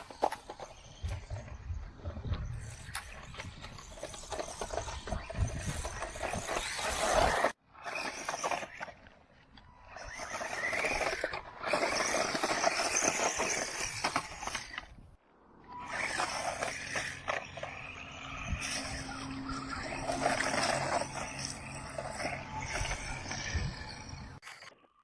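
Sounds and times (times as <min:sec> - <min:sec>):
tyre and drivetrain noise: 0:00.0 - 0:25.0
electric motor whine: 0:15.5 - 0:24.7.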